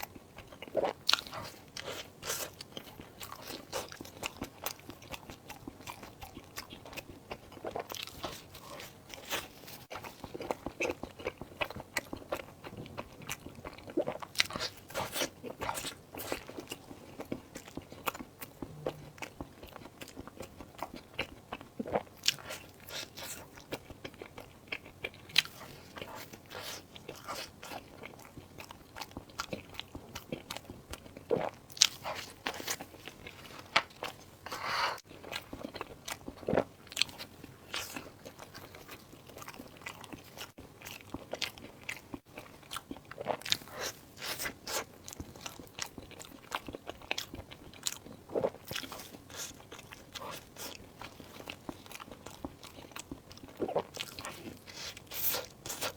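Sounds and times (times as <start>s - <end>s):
wet chewing: 0.0s - 55.9s.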